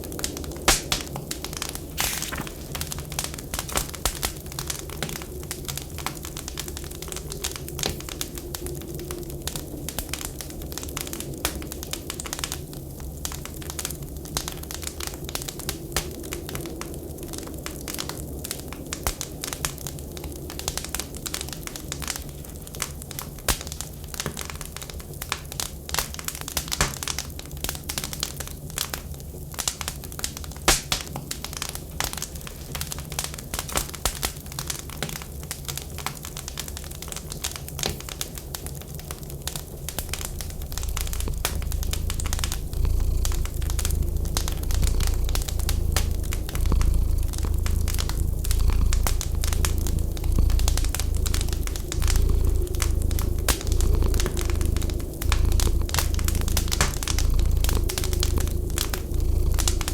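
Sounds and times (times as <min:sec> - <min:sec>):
wood fire crackling and popping: 0:00.1 - 0:59.9
steady low rumble: 0:00.7 - 0:12.3, 0:39.2 - 0:59.9.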